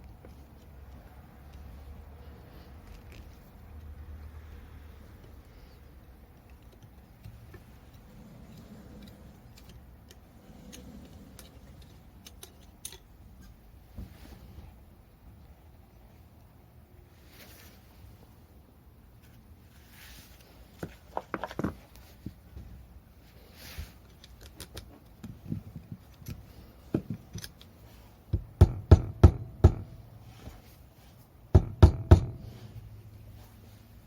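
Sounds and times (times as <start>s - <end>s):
objects being handled clicks: 6.3s - 13.6s, 24.0s - 27.8s.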